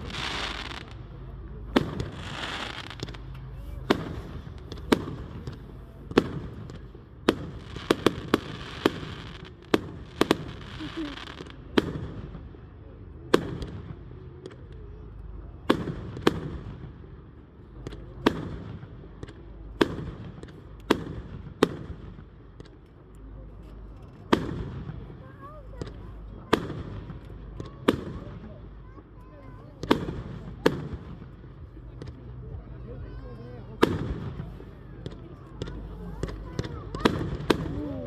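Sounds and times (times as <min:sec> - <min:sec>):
hissing crackle of fireworks: 0:00.0 - 0:12.7, 0:23.7 - 0:32.4, 0:33.8 - 0:38.0
fireworks bursting with sharp bangs: 0:00.0 - 0:38.0.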